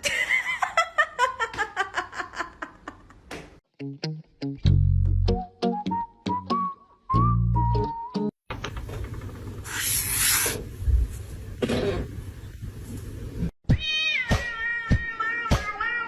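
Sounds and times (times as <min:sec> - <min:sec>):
cat hissing: 0:09.7 - 0:10.6.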